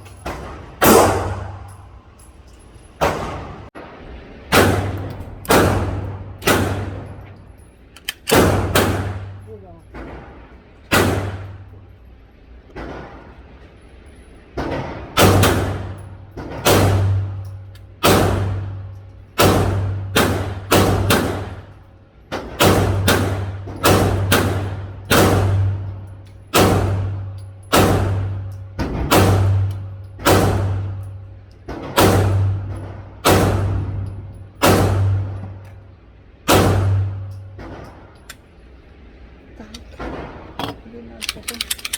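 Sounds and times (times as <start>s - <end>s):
pistol shots echoing: 0.1s - 2.0s, 4.5s - 7.2s, 8.2s - 9.4s, 10.9s - 11.7s, 15.2s - 16.0s, 16.6s - 21.7s, 22.4s - 31.2s, 31.8s - 35.6s, 36.5s - 37.7s.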